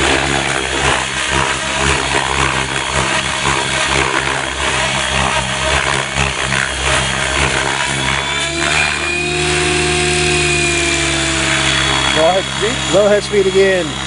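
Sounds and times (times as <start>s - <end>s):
helicopter rotor and motor whine: 0.0s - 14.0s.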